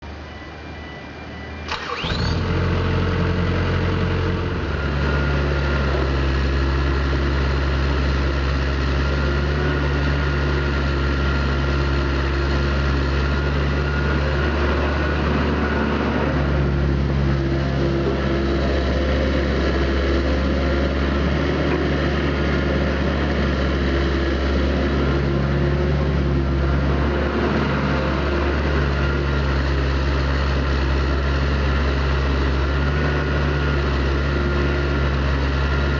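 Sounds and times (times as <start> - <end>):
diesel engine starting and running: 0.0 - 35.9.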